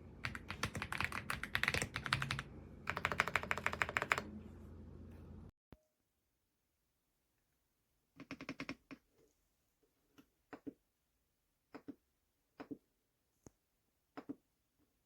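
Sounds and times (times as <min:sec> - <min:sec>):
mechanical keyboard keystrokes: 0:00.2 - 0:04.3.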